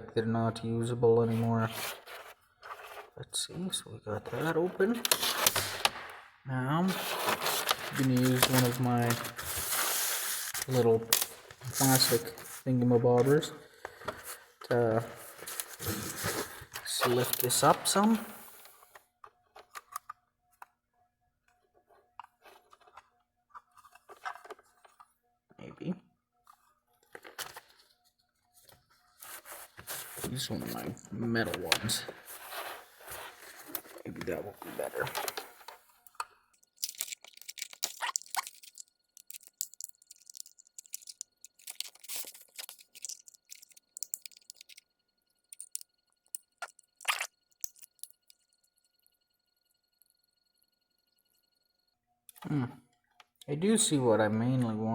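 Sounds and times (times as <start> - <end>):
metal tool scraping plastic: 36.6 - 44.8
plastic cracking: 36.6 - 44.8.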